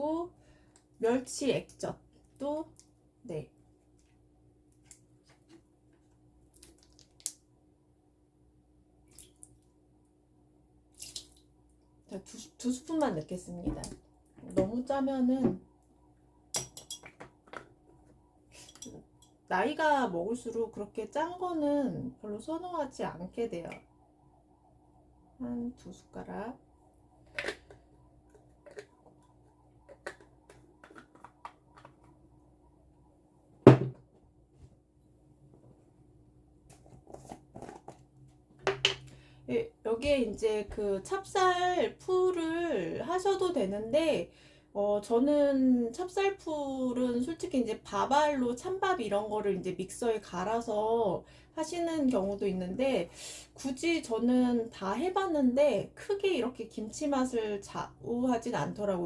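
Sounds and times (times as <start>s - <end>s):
spoon and containers clicking: 16.6s - 17.6s.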